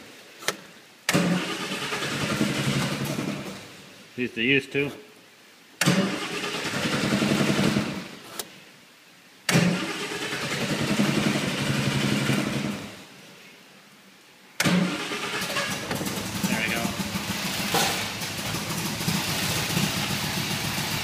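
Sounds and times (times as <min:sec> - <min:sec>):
car engine firing up and running: 0:01.1 - 0:03.7, 0:05.8 - 0:08.2, 0:09.5 - 0:13.1, 0:14.6 - 0:21.0.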